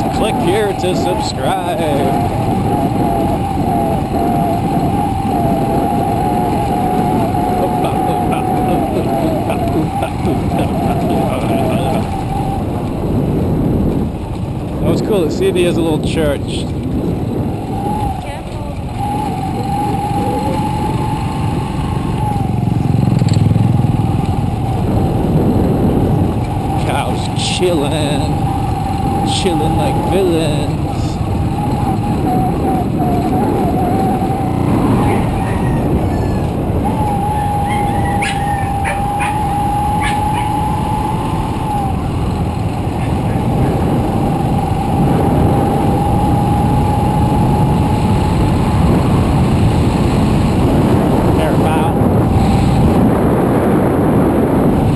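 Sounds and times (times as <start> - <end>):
steady high whine: 0.0 - 13.0, 24.3 - 49.4
motorcycle engine running: 0.0 - 54.9
wind noise on microphone: 0.0 - 54.9.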